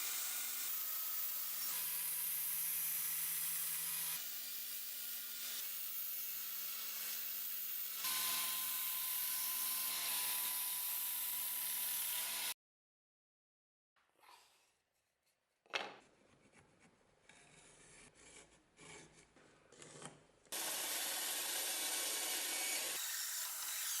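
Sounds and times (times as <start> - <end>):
power tool grinding steel: 20.5 - 24.0.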